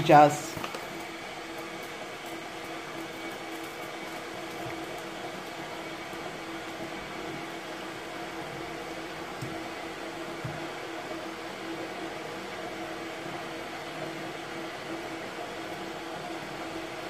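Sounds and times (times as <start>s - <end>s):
small fan motor humming: 0.0s - 17.0s.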